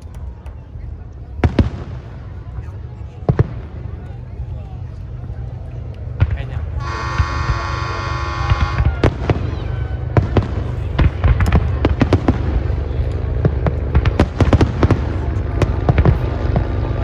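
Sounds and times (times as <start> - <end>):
fireworks popping and banging: 0.0 - 5.2, 5.8 - 17.0
low rumble: 0.0 - 17.0
car horn: 6.8 - 10.0.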